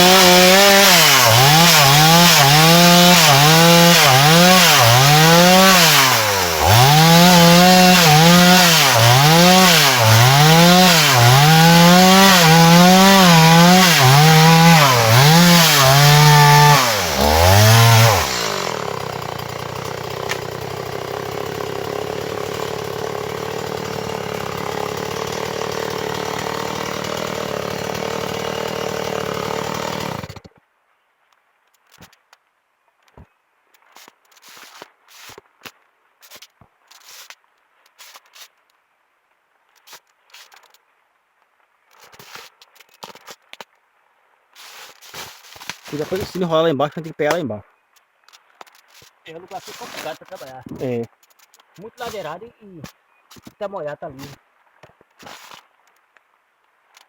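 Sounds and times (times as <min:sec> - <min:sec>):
chainsaw cutting wood: 0:00.0 - 0:30.6, 0:44.7 - 0:46.6, 0:48.8 - 0:50.9, 0:52.0 - 0:52.4, 0:55.2 - 0:55.6.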